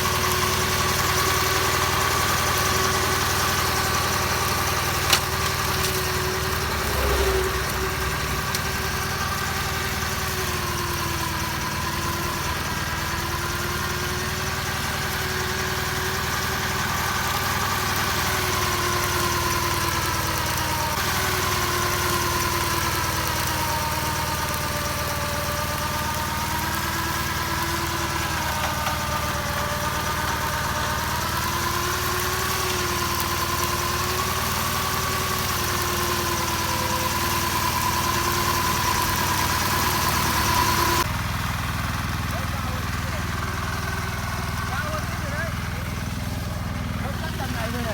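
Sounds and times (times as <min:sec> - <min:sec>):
mower diesel engine running: 0:00.0 - 0:47.9
wavering whine: 0:04.1 - 0:10.7.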